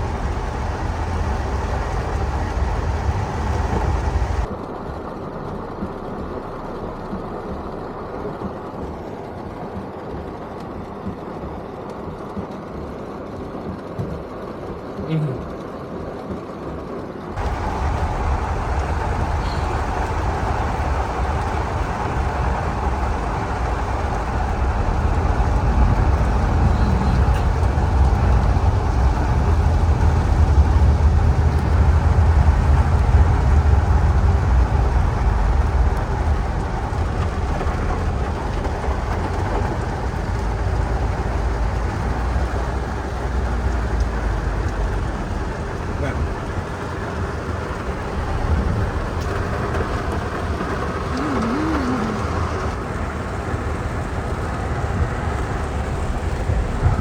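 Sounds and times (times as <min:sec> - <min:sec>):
rain on car body: 0:00.0 - 0:04.5, 0:17.4 - 0:57.0
car running noise: 0:00.0 - 0:09.9, 0:17.4 - 0:57.0.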